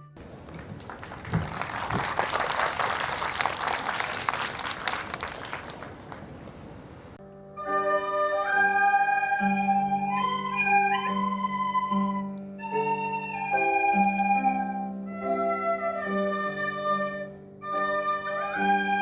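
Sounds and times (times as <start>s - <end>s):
flute melody over held tones: 0.0s - 3.8s, 7.5s - 19.0s
audience applauding: 0.2s - 7.2s.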